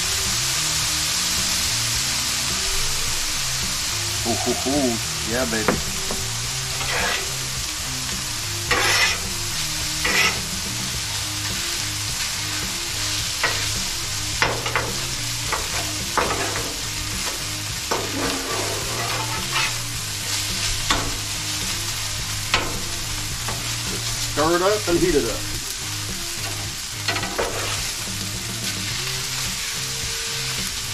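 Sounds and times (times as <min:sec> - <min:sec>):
rice sizzling on a griddle: 0:00.0 - 0:30.9
metal spatulas scraping steel: 0:06.2 - 0:07.5, 0:08.7 - 0:09.4, 0:10.0 - 0:10.6, 0:14.4 - 0:21.3, 0:26.4 - 0:27.8.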